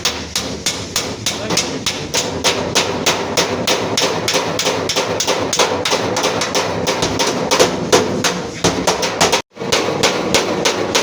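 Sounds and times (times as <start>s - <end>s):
hammer beating sheet metal: 0.0s - 11.0s.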